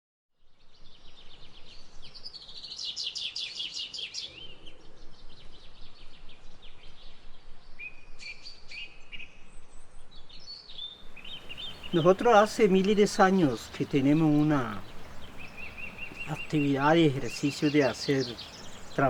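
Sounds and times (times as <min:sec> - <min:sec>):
birds trilling and whistling: 0:10.5 - 0:19.0
faint steady hiss: 0:11.0 - 0:19.0.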